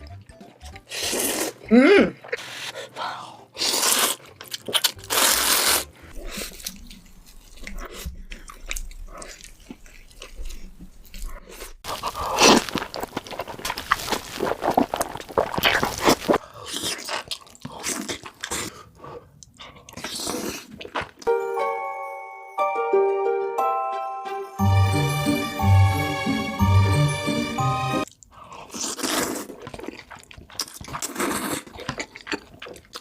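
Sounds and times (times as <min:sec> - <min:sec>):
crunchy biting and chewing: 0:03.6 - 0:21.3, 0:28.1 - 0:33.0.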